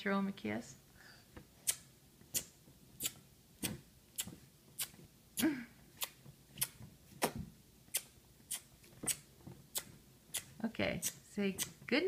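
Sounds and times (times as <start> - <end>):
lip-smacking kisses: 6.0 - 9.2.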